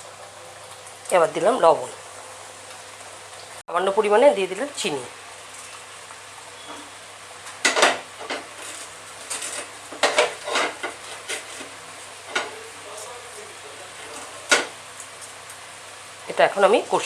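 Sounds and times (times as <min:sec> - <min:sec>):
oil sizzling: 0:00.0 - 0:17.0
spatula scraping a pan: 0:08.3 - 0:12.6.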